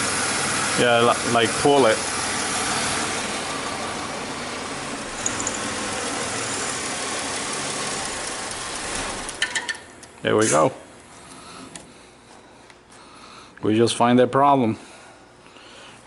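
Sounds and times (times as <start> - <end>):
car engine running: 0.0 - 9.4.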